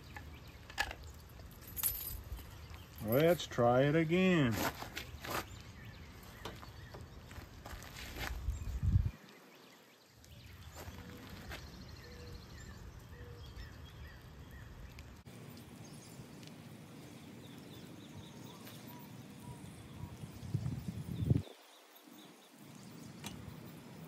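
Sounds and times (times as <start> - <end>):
steady rain hissing: 5.5 - 24.0
faint chirps: 15.4 - 24.0.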